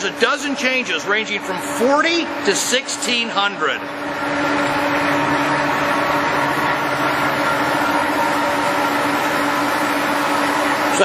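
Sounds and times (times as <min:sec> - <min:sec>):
lathe mechanical hum: 0:00.0 - 0:11.0
steady tones from gearing: 0:00.0 - 0:11.0.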